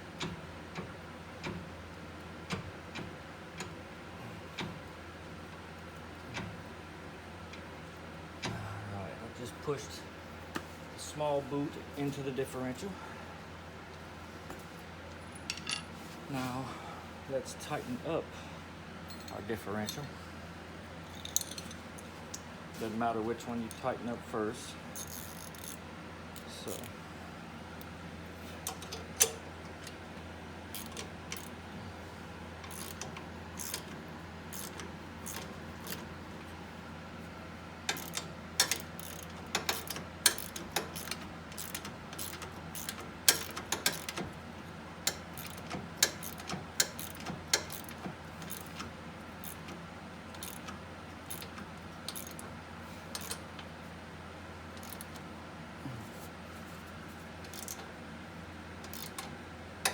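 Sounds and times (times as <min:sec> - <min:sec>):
ratchet wrench clicking: 0:25.0 - 0:25.8, 0:30.7 - 0:31.5, 0:32.7 - 0:33.9, 0:34.5 - 0:36.0, 0:37.9 - 0:44.2, 0:45.1 - 0:48.8, 0:49.4 - 0:49.8, 0:50.4 - 0:52.5, 0:53.2 - 0:53.4, 0:54.8 - 0:55.2, 0:57.5 - 0:57.9, 0:58.9 - 0:59.3.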